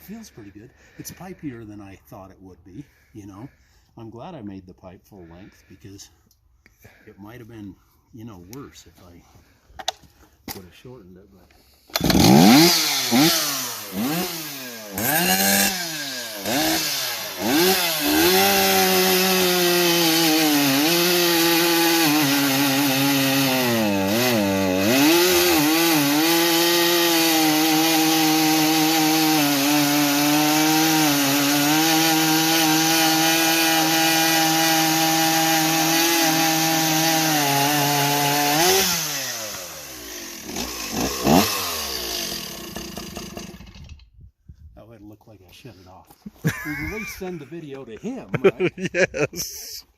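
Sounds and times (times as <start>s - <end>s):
chainsaw revving and cutting wood: 11.9s - 44.0s, 46.4s - 49.4s.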